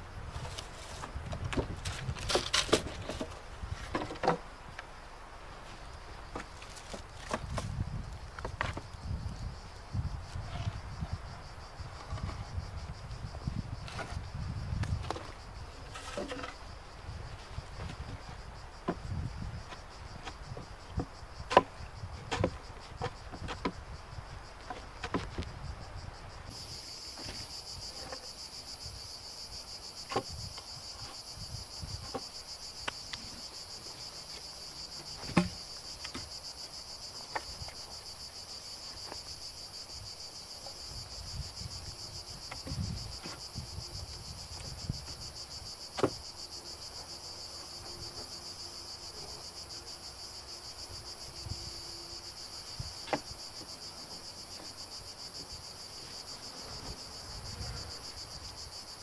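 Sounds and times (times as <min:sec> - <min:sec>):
insects buzzing: 0:00.0 - 0:59.0.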